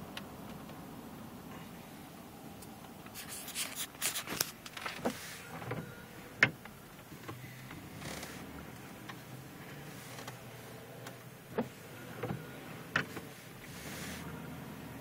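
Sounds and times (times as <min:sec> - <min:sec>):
car cabin road rumble: 0:00.0 - 0:15.0
rustling and handling noises: 0:03.1 - 0:05.8.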